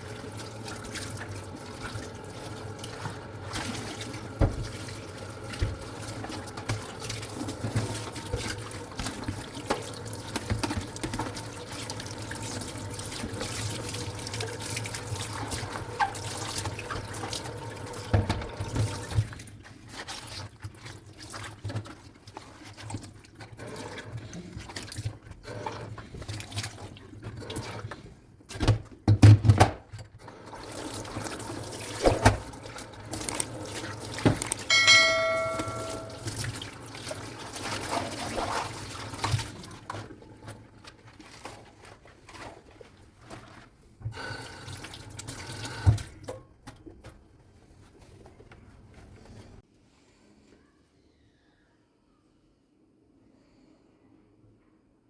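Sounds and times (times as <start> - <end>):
tap water running: 0.0 - 47.4
dishes knocking and clinking: 34.2 - 36.4
dishes clattering: 34.3 - 36.4
dish ringing: 34.7 - 36.3.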